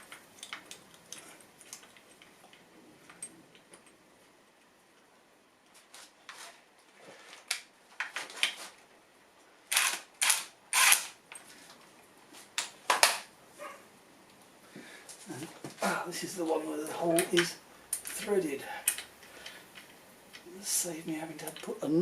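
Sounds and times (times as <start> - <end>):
metal parts clicking and clinking: 0.0 - 4.0, 9.7 - 11.4.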